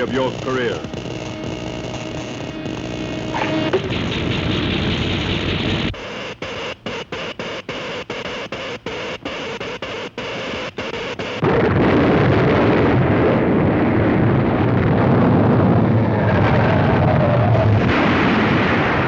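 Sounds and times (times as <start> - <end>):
heavy explosion rumble: 3.3 - 6.0, 11.4 - 19.0
steady pulsing cartoon noise: 3.4 - 11.2.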